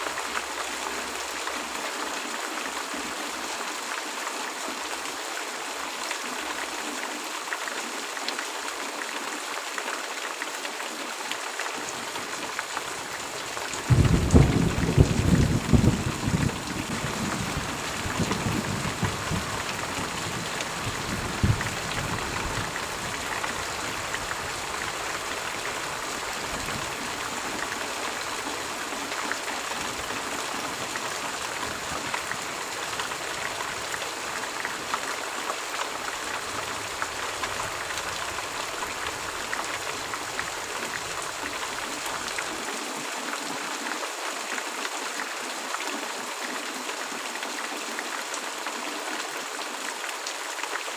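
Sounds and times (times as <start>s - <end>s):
steady rain: 0.0s - 50.9s
sharp thunder clap: 13.9s - 17.0s
thunder rumble: 13.9s - 19.5s.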